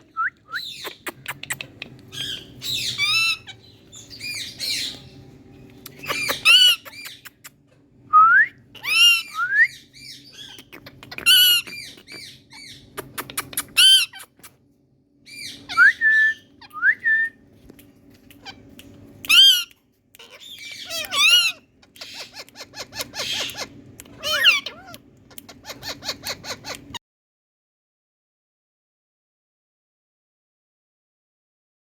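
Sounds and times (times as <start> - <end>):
faint low hum: 0.0 - 27.0
parakeets squawking: 0.6 - 5.2, 5.9 - 7.4, 8.7 - 14.4, 15.3 - 16.8, 18.3 - 27.0.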